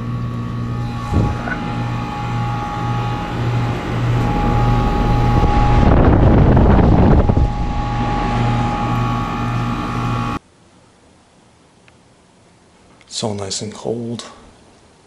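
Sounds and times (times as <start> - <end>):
air conditioner unit humming: 0.0 - 10.4
wind gust: 0.8 - 10.4.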